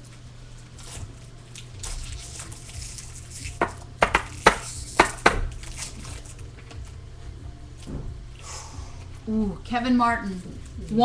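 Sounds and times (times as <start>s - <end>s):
foil wrapper rustling and crinkling: 0.1s - 6.9s.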